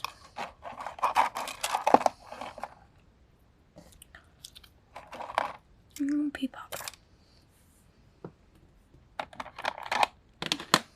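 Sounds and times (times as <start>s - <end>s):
fidget toys clicking and crinkling: 0.0s - 2.8s, 3.8s - 7.0s.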